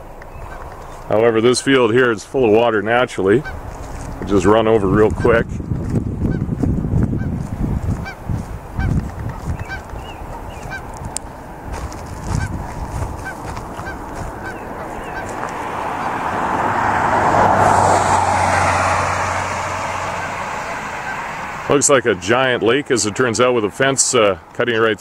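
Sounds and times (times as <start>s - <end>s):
geese honking: 0.0s - 5.4s, 8.0s - 24.4s
vehicle passing: 0.0s - 24.5s
microphone handling bumps: 3.4s - 16.2s.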